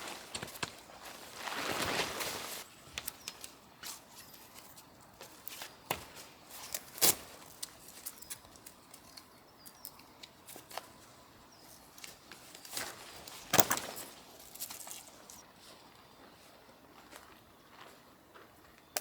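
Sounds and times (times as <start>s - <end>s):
clicks and rustles of handling: 0.0s - 5.8s.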